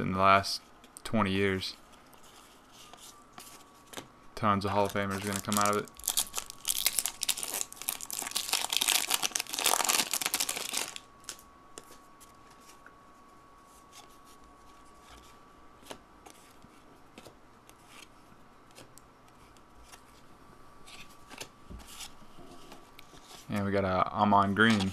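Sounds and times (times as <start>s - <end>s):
wrapper tearing and crinkling: 4.8s - 11.4s.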